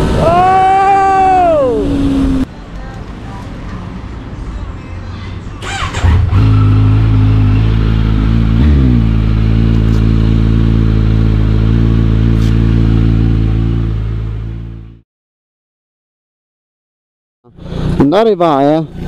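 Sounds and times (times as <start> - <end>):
motorcycle engine running: 6.0 - 15.0.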